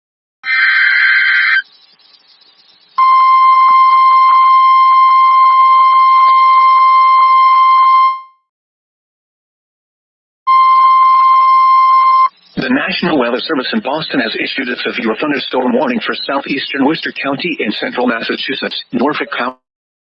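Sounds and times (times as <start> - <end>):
screeching digital data tones: 0.4 - 6.6, 10.5 - 18.5
steady warning alarm tone: 3.0 - 8.3, 10.5 - 13.6.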